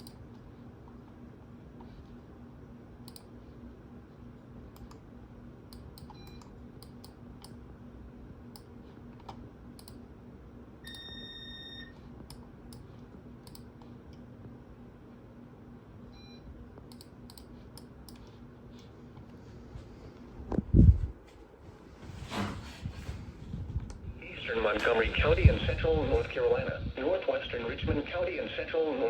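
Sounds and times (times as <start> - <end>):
low electrical hum: 0.0 - 29.0
computer keyboard clicks: 3.0 - 3.3, 13.4 - 13.7, 16.9 - 18.3.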